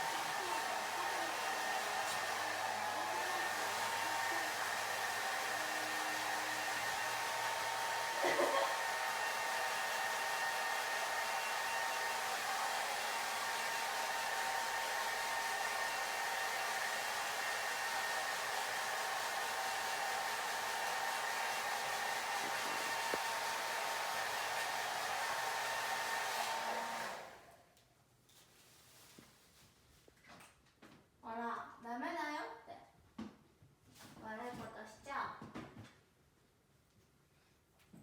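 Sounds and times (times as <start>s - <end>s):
hair dryer blowing: 0.0s - 27.6s.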